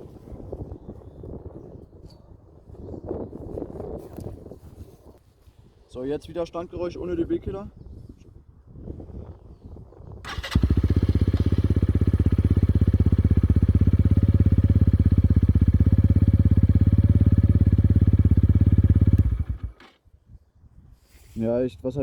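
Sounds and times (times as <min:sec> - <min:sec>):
motorcycle engine rumbling: 0:10.2 - 0:20.0.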